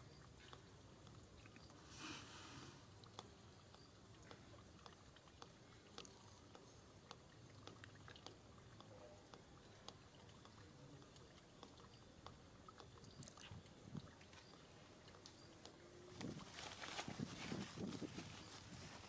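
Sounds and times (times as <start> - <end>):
low steady hiss: 0.0 - 19.0
small clicks and rustles: 14.2 - 19.0.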